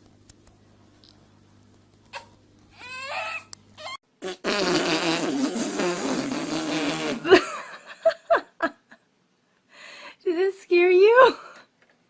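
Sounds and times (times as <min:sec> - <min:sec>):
long rasping fart: 0:03.8 - 0:07.4.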